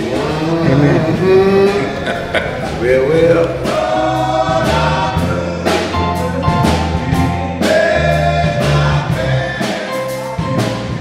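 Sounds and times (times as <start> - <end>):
bass notes: 0.0 - 11.0
drums keeping a steady beat: 0.0 - 11.0
men's group singing in harmony: 0.0 - 11.0.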